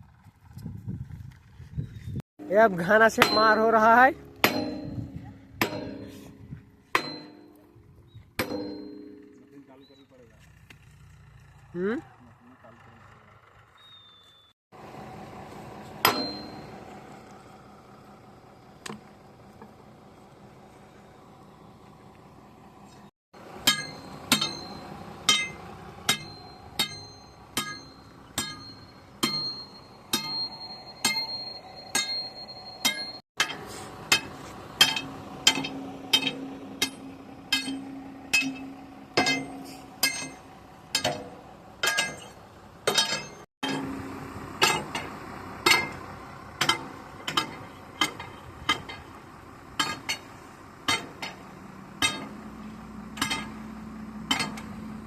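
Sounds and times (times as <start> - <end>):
sledgehammer striking steel pin: 3.2 - 7.6, 8.4 - 9.5, 16.0 - 16.8, 23.6 - 43.9, 53.2 - 53.7.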